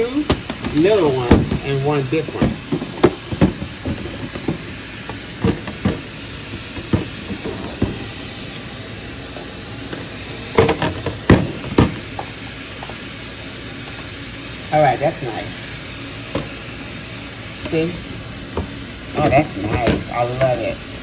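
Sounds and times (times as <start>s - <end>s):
tap water running into sink: 0.0s - 21.0s
plastic containers knocking: 0.3s - 8.0s, 9.9s - 12.3s, 18.5s - 20.8s.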